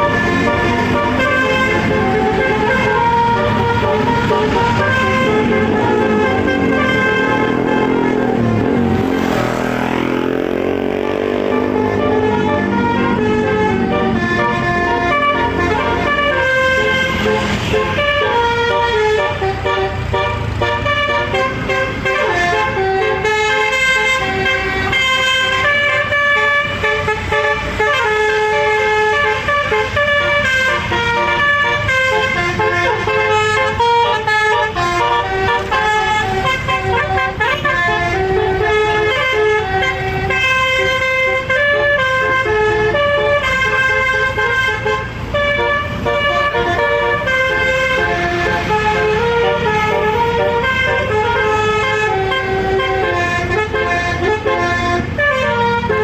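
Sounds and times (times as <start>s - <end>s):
bus air horn playing a melody: 0.0s - 56.0s.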